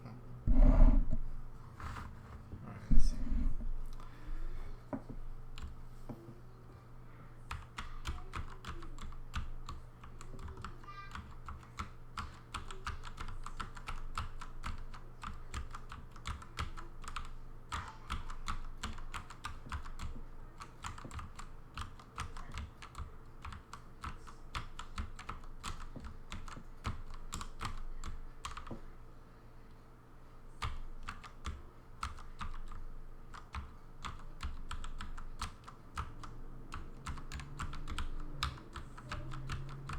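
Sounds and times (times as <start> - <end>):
mechanical keyboard clatter: 33.4 - 39.9.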